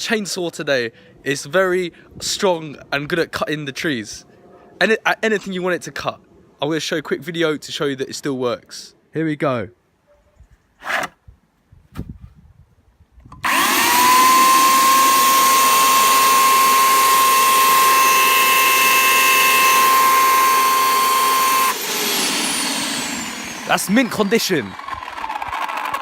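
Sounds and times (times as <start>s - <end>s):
electric chainsaw motor whining: 13.4s - 26.0s.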